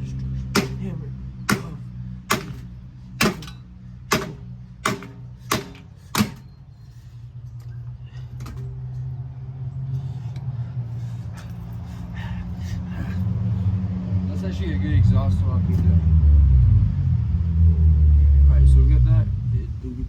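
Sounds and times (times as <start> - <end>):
steady low hum: 0.0 - 20.0
hammer striking metal: 0.5 - 6.6.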